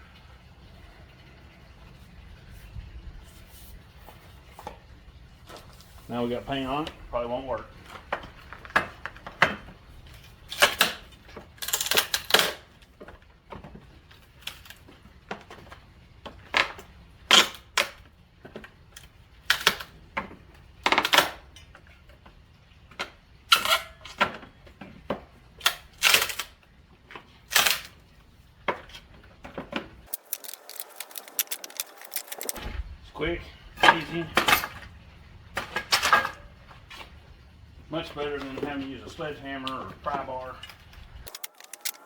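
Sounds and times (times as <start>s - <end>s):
wooden boards cracking and knocking: 29.5s - 32.6s.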